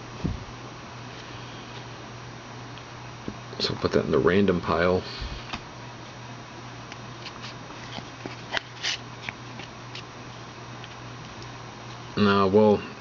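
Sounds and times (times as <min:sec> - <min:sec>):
cards sliding: 0:07.2 - 0:10.1.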